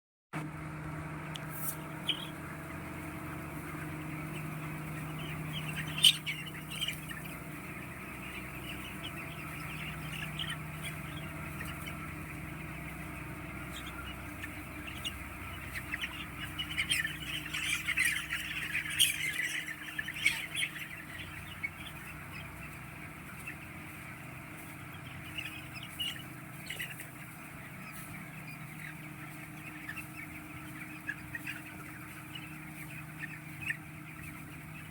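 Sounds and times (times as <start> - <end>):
chickens calling: 0.4 - 34.9
steady low hum: 0.4 - 34.9.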